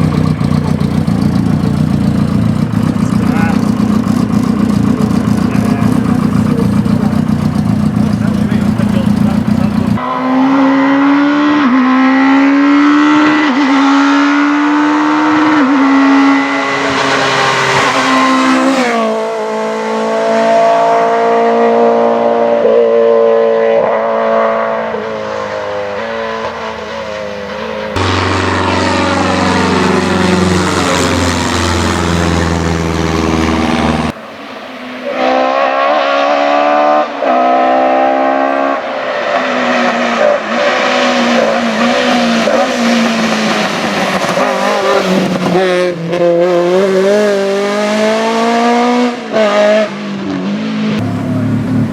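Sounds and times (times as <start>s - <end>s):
rally car engines revving: 0.0s - 51.9s.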